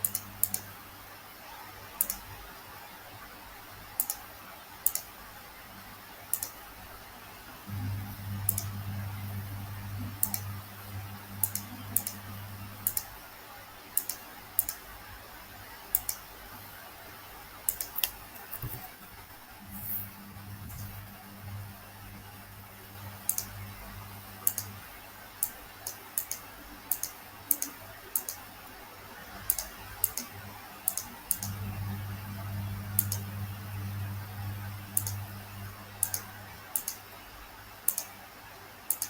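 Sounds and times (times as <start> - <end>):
computer mouse clicking: 0.0 - 0.7, 2.0 - 2.4, 4.0 - 5.2, 6.3 - 6.6, 10.2 - 10.5, 11.4 - 13.2, 14.0 - 14.9, 15.9 - 16.3, 17.7 - 19.0, 23.2 - 23.8, 24.4 - 28.6, 29.3 - 31.6, 33.0 - 33.3, 35.0 - 35.3, 36.0 - 37.1, 37.9 - 38.2
low steady hum: 0.0 - 2.4, 7.4 - 13.8, 17.6 - 38.6.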